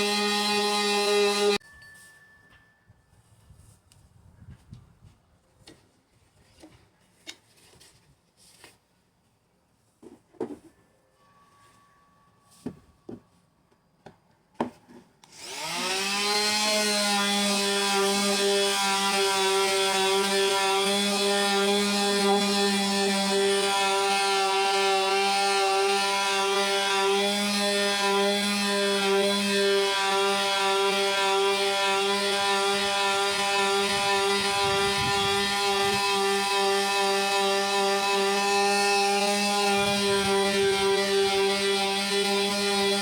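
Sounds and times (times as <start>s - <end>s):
power sander motor hum: 0.0s - 1.6s, 15.2s - 43.0s.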